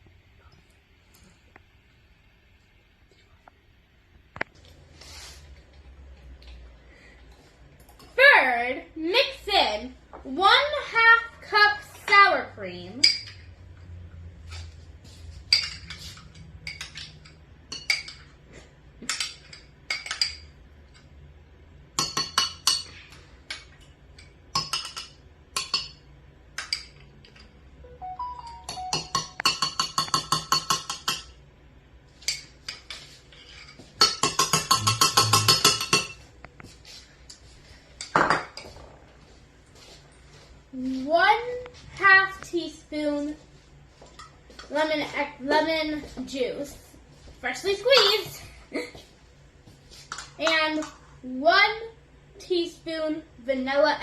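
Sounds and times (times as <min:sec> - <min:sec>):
spoon tapping mixing bowl: 0:28.4 - 0:31.4, 0:34.0 - 0:36.2.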